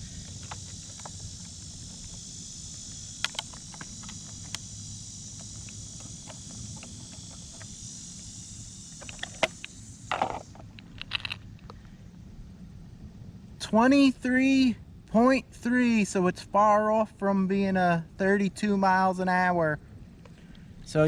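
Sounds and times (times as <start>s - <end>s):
rustle: 0.0s - 13.7s
insects chirping: 0.0s - 21.0s
sharp clicks: 3.1s - 4.7s.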